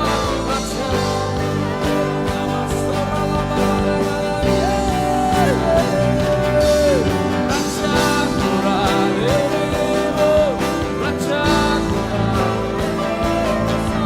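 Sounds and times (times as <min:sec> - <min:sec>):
band playing instrumental: 0:00.0 - 0:14.0
gliding guitar melody: 0:00.0 - 0:14.0.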